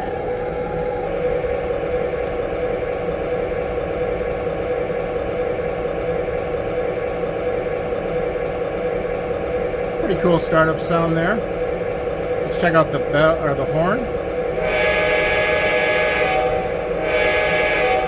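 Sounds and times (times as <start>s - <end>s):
toy train diesel engine sound: 9.8s - 18.0s.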